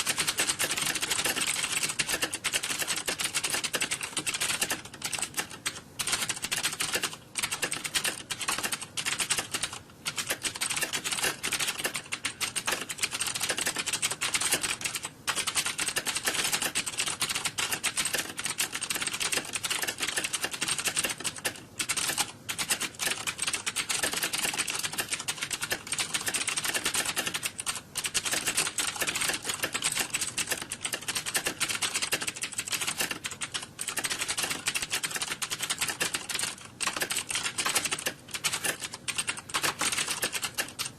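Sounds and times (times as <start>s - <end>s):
keyboard typing: 0.0s - 40.9s.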